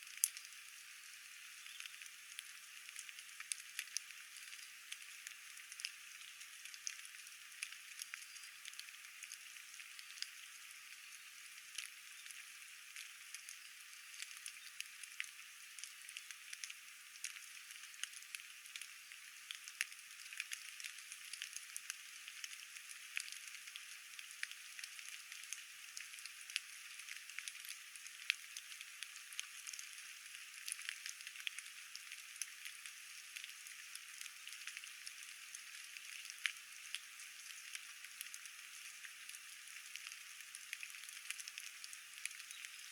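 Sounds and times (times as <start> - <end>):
light rain hiss: 0.0 - 42.9
raindrop ticks: 0.1 - 0.5, 14.2 - 42.8.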